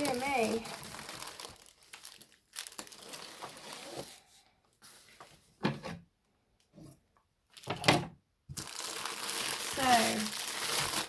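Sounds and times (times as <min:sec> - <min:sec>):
cardboard packaging rustling: 0:00.0 - 0:05.6, 0:08.6 - 0:11.0.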